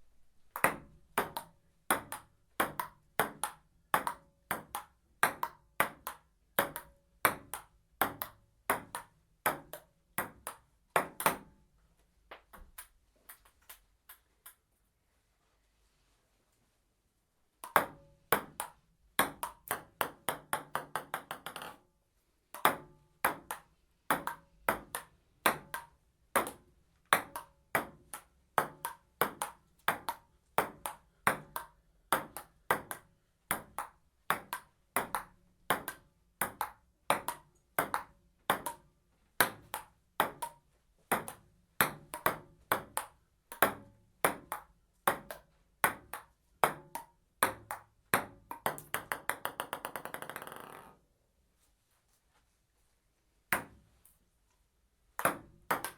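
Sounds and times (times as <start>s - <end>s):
table tennis rally: 0.5s - 11.5s, 17.6s - 21.8s, 22.6s - 51.0s, 53.6s - 53.8s, 55.2s - 55.9s
table tennis ball bouncing: 0.5s - 11.6s, 17.6s - 21.8s, 22.5s - 51.0s, 53.5s - 53.8s, 55.2s - 55.9s.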